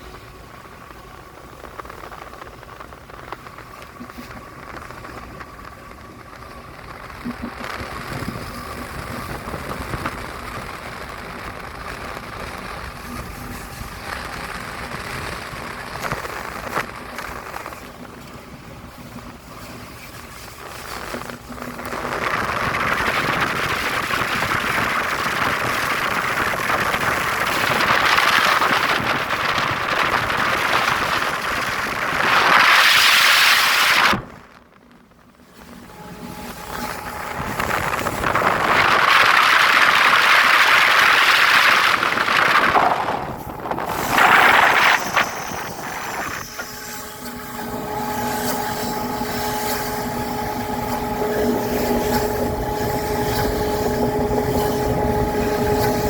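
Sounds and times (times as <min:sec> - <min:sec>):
train wheels rushing on rails: 0:00.0 - 0:56.0
steady background hum: 0:34.2 - 0:56.0.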